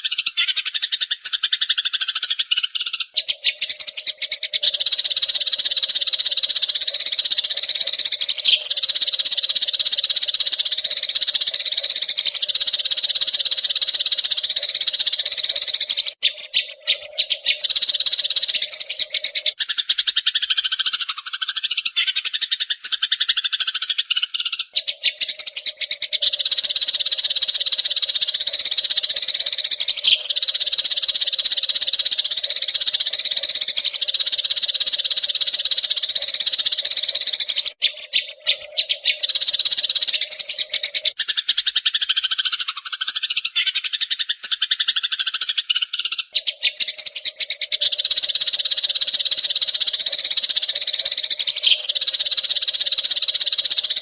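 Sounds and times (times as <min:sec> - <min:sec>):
sparrows chattering: 0:00.0 - 0:54.0.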